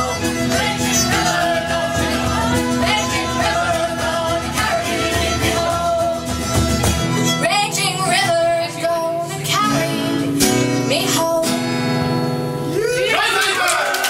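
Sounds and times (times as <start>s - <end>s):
person singing: 0.0s - 6.6s
acoustic guitar: 0.0s - 13.1s.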